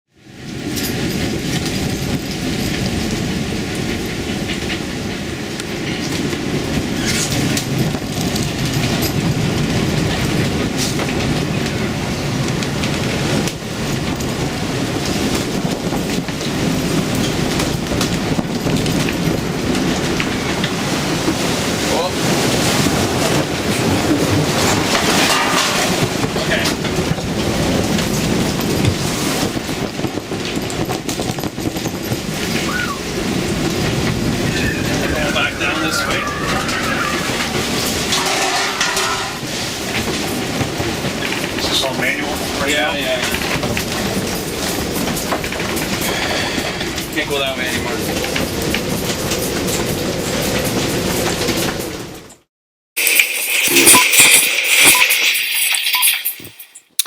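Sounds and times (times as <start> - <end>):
heavy seas: 0.2 - 52.2
storm wind on microphone: 0.2 - 52.3
breaking waves: 19.6 - 29.8.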